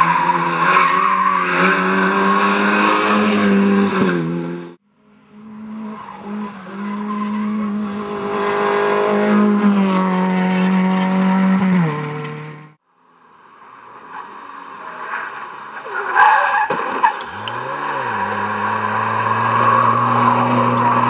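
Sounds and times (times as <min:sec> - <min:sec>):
rally car engine at high revs: 0:00.0 - 0:12.8, 0:13.8 - 0:21.0.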